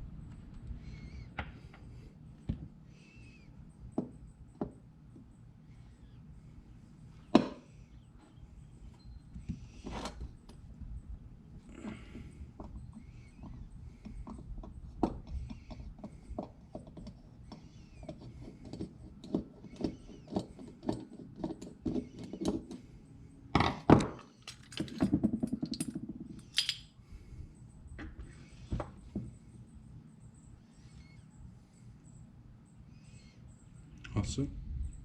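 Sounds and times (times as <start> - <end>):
metal parts and tools clicking: 24.1 - 26.9.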